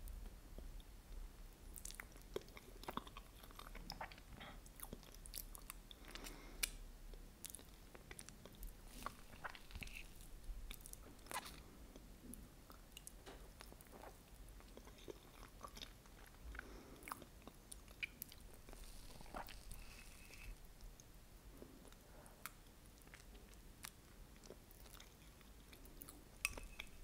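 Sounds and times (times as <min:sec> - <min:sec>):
soft chewing: 0:01.6 - 0:27.0.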